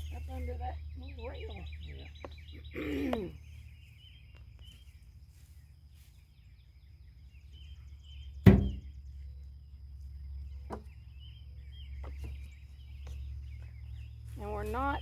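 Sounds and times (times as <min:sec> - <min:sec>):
birds chirping: 0:00.0 - 0:15.0
sharp knocks: 0:08.4 - 0:08.9.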